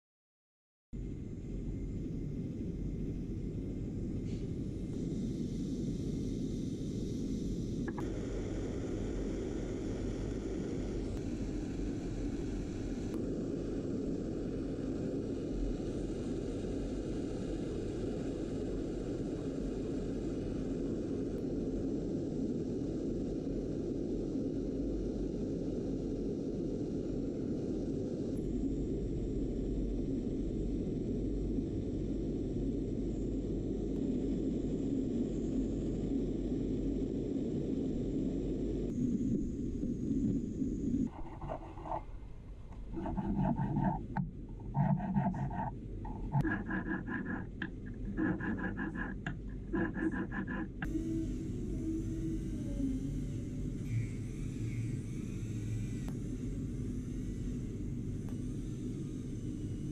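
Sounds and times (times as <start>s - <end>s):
low machine hum and rumble: 1.0s - 59.9s.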